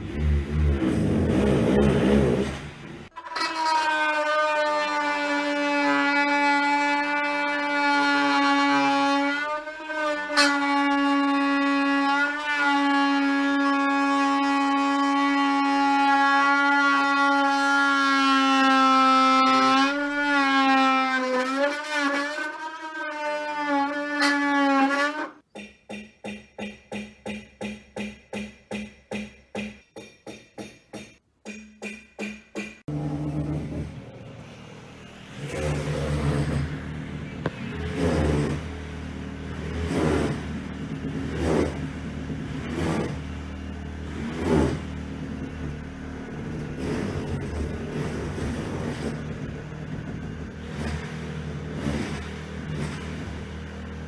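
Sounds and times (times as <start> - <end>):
power tool motor whining: 32.9 - 54.0.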